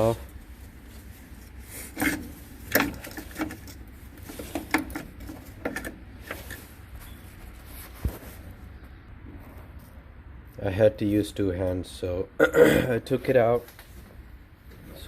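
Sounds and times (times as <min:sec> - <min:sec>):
car hood latch clicking and knocking: 0:02.0 - 0:03.6.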